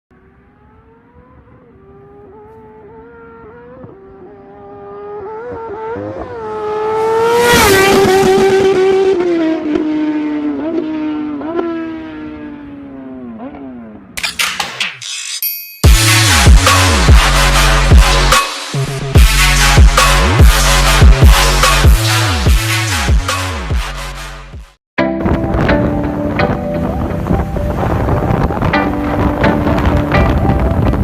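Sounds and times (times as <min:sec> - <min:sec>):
motorbike passing at high revs: 0:00.1 - 0:14.2
electronic music hits: 0:15.8 - 0:31.0.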